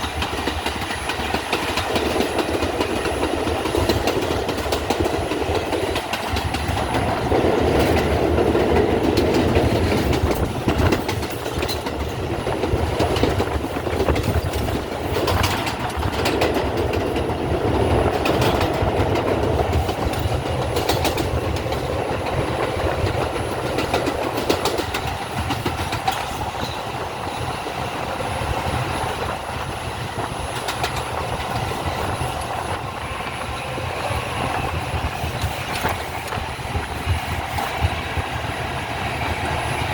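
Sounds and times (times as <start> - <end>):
subway train rumbling: 0.0 - 39.9
wheels clicking over rail joints: 0.0 - 39.9.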